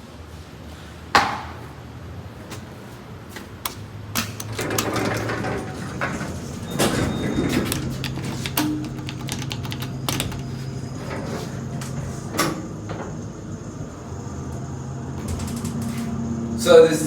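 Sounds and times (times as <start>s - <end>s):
steady low hum: 0.0s - 17.0s
sliding rumbling noise: 4.4s - 8.6s, 9.9s - 16.4s
scattered clicks: 7.7s - 10.5s.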